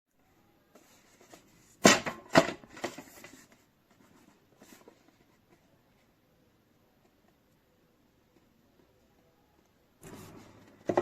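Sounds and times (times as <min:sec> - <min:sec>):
light rustling and scraping: 0:10.0 - 0:11.0.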